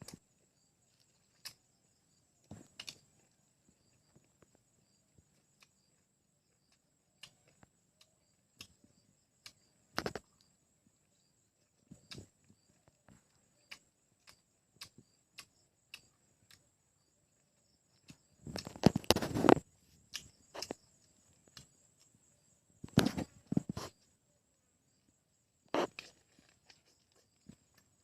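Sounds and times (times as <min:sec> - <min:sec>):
chewing and sucking: 0:25.8 - 0:27.8.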